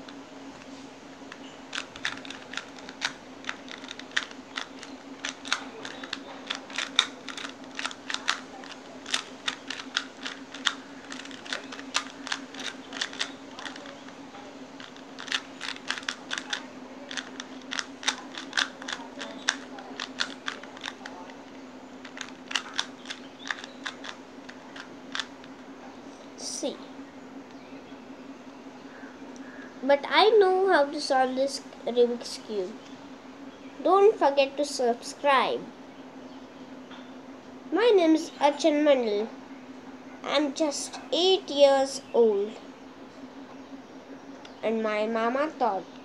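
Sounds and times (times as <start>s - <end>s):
steady low hum: 0.0s - 46.0s
plastic puzzle cube clicking: 1.7s - 14.0s, 14.8s - 21.2s, 22.0s - 25.3s.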